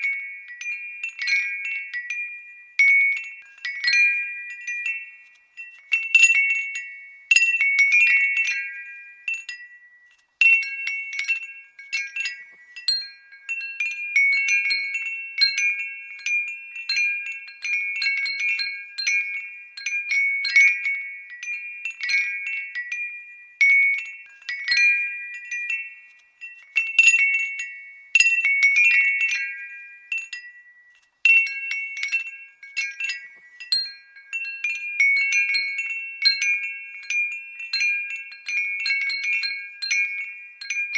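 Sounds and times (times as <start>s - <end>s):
glass wind chime tinkling: 0.0s - 40.9s.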